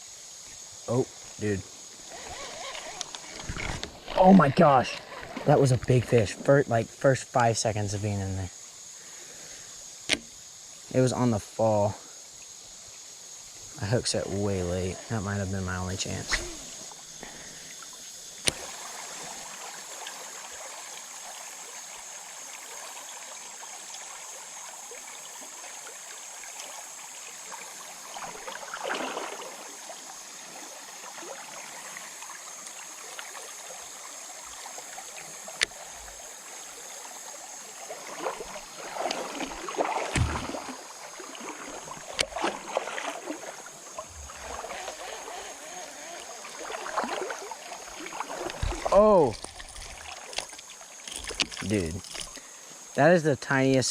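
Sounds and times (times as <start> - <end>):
creek water rushing: 0.0 - 53.9
sharp clicks: 10.1 - 10.3
water splashing: 27.4 - 31.9, 33.0 - 52.5.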